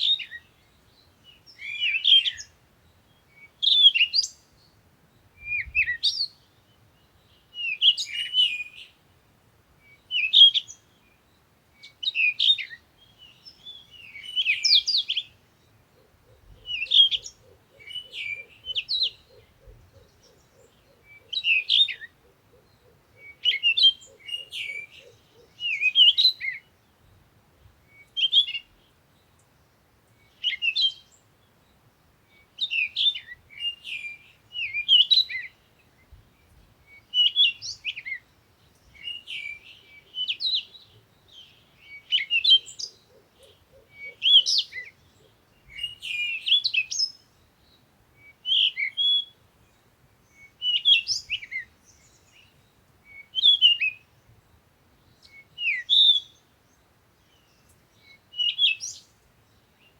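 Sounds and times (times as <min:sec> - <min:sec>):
birds chirping: 0:09.8 - 0:59.9.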